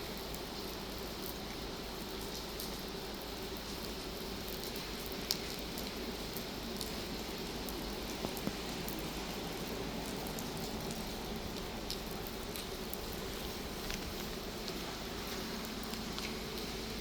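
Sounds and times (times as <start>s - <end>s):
steady rain falling: 0.0s - 17.0s
sharp taps of raindrops: 3.7s - 17.0s.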